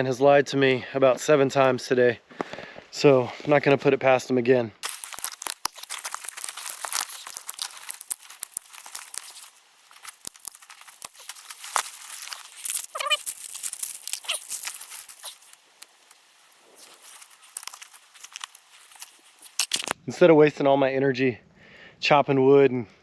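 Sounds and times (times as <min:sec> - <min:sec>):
dry material crackling and crumpling: 0:04.8 - 0:20.0.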